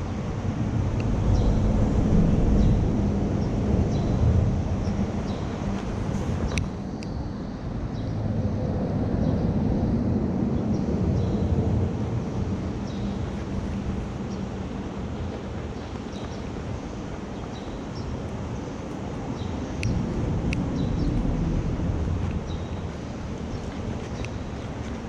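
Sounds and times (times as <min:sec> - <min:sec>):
wind rumbling on microphone: 0:00.0 - 0:25.0
faint light ticks: 0:23.3 - 0:25.0.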